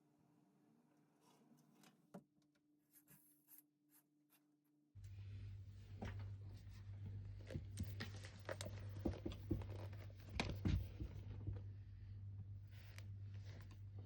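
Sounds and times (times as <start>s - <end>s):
low electrical hum: 5.0s - 14.0s.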